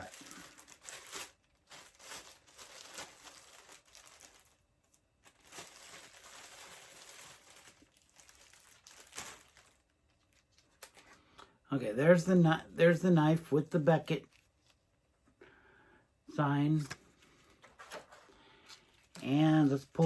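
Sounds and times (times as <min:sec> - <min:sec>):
packaging crinkling: 0:00.0 - 0:11.2, 0:16.8 - 0:20.0.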